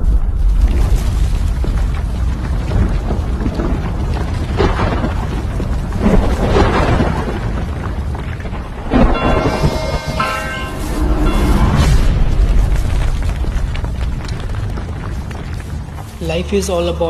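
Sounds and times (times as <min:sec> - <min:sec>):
thunder rumbling: 0:00.0 - 0:16.2
rain: 0:00.0 - 0:17.0
steady tones: 0:09.0 - 0:13.0.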